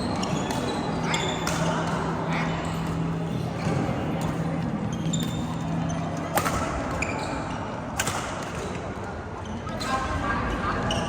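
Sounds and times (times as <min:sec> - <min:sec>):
shoes squeaking on court floor: 0:00.0 - 0:01.9, 0:03.0 - 0:07.8
rackets striking shuttlecock: 0:00.2 - 0:02.1, 0:06.2 - 0:07.0, 0:07.9 - 0:09.1.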